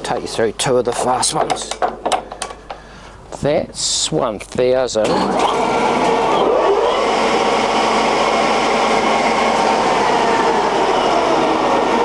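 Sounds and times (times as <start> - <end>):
lathe gear noise: 5.1 - 12.0.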